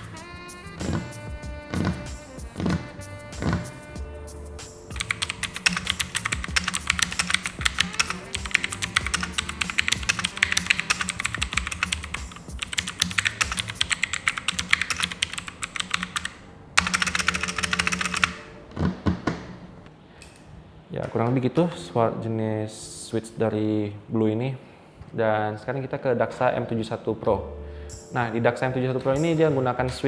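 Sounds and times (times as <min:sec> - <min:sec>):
mechanical keyboard typing: 0:01.7 - 0:03.8, 0:04.9 - 0:19.8.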